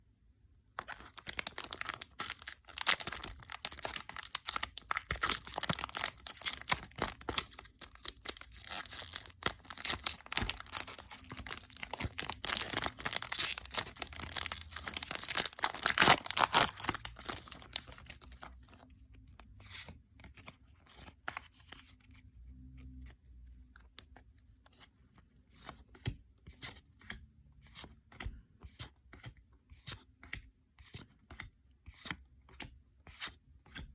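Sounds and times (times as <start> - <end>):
foil wrapper tearing and crinkling: 0.8 - 18.4
cards being handled: 0.8 - 22.2.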